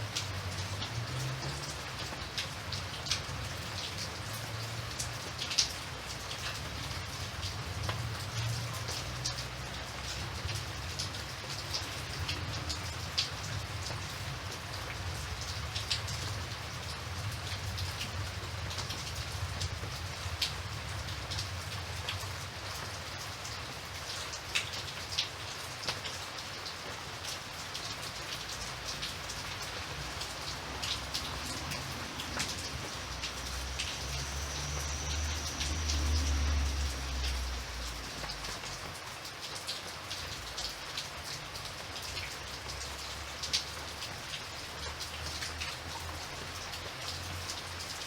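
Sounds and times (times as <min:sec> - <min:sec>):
rain pattering: 0:00.0 - 0:48.0.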